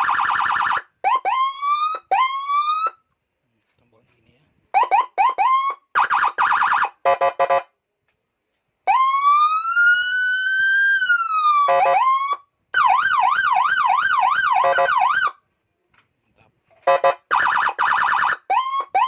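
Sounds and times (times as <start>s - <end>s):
siren wailing and yelping: 0.0s - 3.0s, 4.7s - 7.0s, 8.9s - 15.4s, 17.3s - 19.0s.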